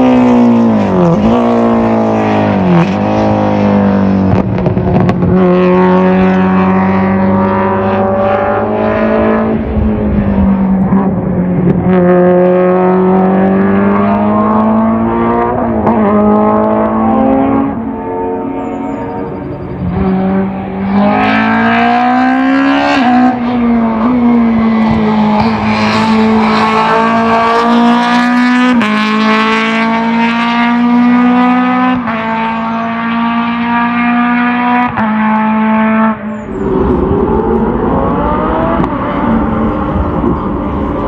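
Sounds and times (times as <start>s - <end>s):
race car engine accelerating: 0.0s - 41.0s.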